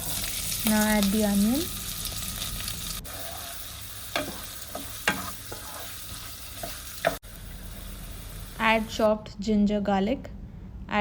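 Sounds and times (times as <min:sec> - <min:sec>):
onion sizzling in oil: 0:00.0 - 0:09.2
utensil scraping pan: 0:03.1 - 0:07.2.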